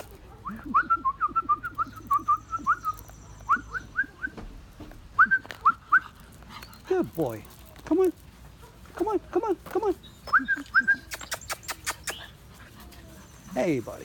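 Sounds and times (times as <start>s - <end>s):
person whistling chirps: 0.5s - 4.4s, 5.2s - 6.0s.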